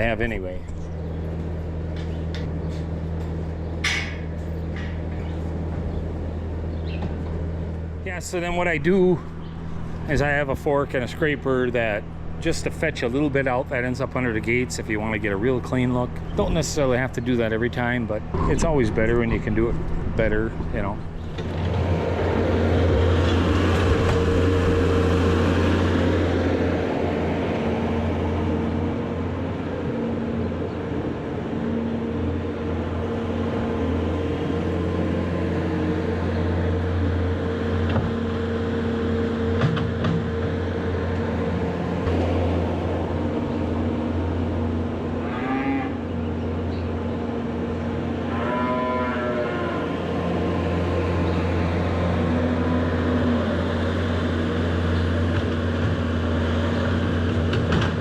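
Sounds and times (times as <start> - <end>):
farm machine engine running: 0.0 - 45.2, 49.8 - 58.0
cattle mooing: 45.0 - 46.3, 48.0 - 54.6.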